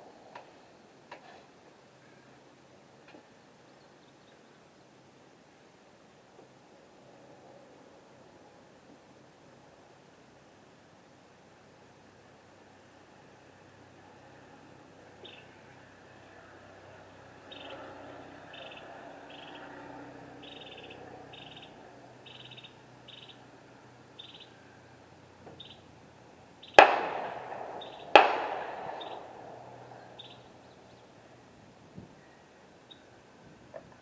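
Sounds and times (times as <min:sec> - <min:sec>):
faint high chirps: 0:20.4 - 0:23.5, 0:24.2 - 0:24.8, 0:29.9 - 0:31.0
rifle shots echoing: 0:26.7 - 0:30.2.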